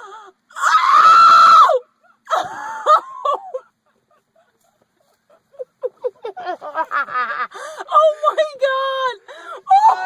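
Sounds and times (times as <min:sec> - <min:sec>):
girl squealing: 0:09.7 - 0:10.0.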